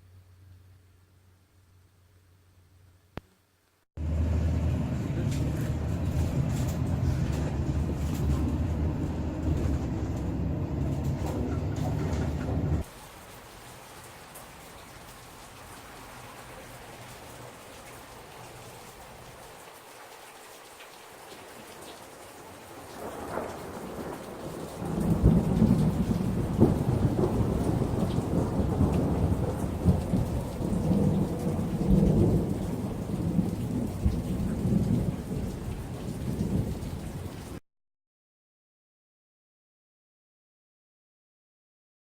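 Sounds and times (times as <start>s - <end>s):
steady rain: 3.1s - 37.6s
rolling thunder rumble: 4.0s - 12.9s, 22.8s - 37.6s.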